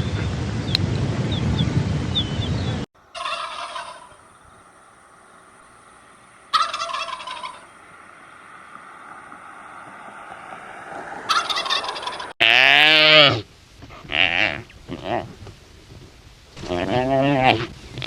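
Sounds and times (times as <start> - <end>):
turkey gobbling: 3.0 - 12.4
drawn-out animal call: 3.0 - 13.4.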